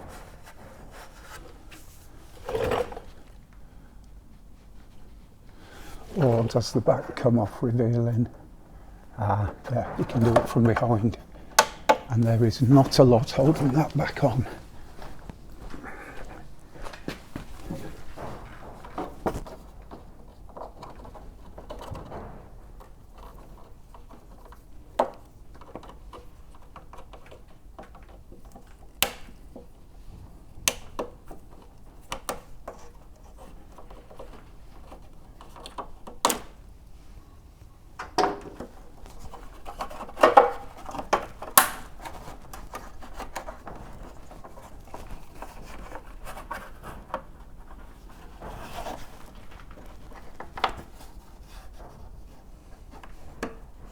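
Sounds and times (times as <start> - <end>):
rubbing and scratching: 0.0 - 3.5, 4.2 - 37.6, 38.4 - 53.9
sharp clicks and knocks on plastic: 9.8 - 12.2, 13.3 - 29.9, 30.5 - 36.7, 38.0 - 53.9.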